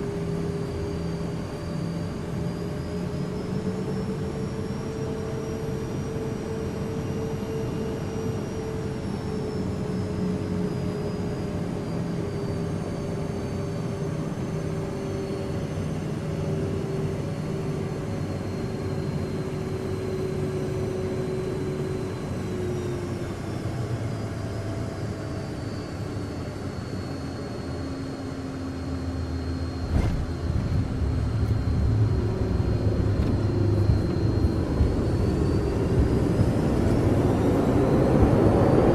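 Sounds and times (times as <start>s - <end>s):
jet engine and airflow noise: 0.0s - 38.9s
engine whine falling in pitch: 17.2s - 38.9s
deep rumble: 29.7s - 38.0s.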